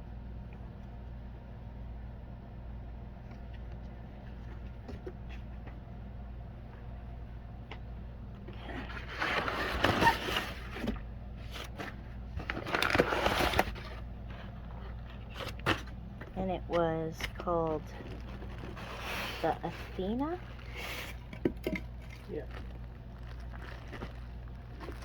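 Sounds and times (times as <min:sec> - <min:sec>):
steady low hum: 0:00.0 - 0:25.0
packaging rustling and scraping: 0:08.6 - 0:25.0.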